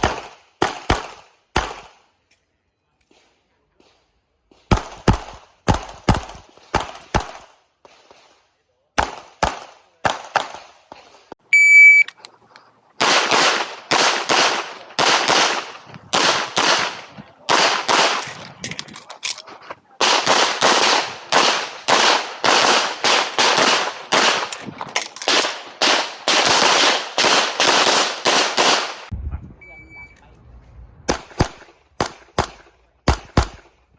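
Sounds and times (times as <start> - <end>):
rapid handgun fire: 0.0 - 2.0, 4.5 - 7.6, 9.0 - 10.8, 13.0 - 18.4, 20.0 - 29.1, 31.1 - 33.7
shot timer beep: 11.5 - 12.1, 29.6 - 30.2.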